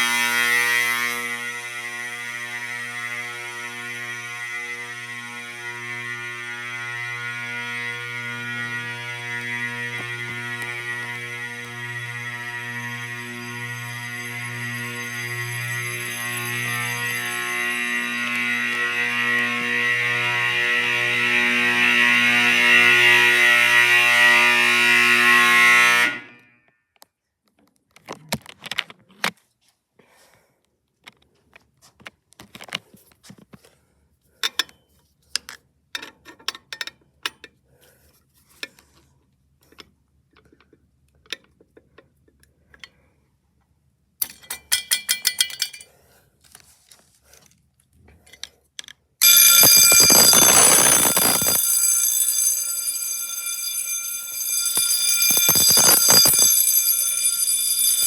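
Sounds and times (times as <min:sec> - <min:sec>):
fire alarm bell ringing: 0:00.0 - 0:26.4, 0:49.2 - 0:58.0
fire alarm horn buzzing: 0:00.0 - 0:26.4, 0:49.2 - 0:58.0.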